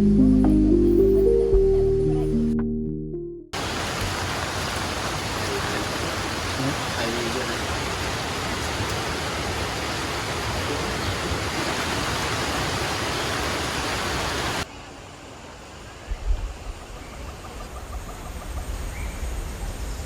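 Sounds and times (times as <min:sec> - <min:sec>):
heavy rain rushing: 0:03.6 - 0:14.7.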